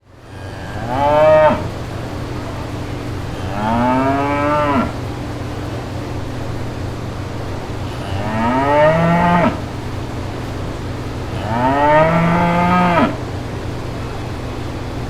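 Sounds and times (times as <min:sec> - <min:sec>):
steady low hum: 0:00.0 - 0:15.0
cow mooing: 0:00.3 - 0:01.8, 0:03.3 - 0:05.0, 0:07.8 - 0:09.7, 0:11.3 - 0:13.2.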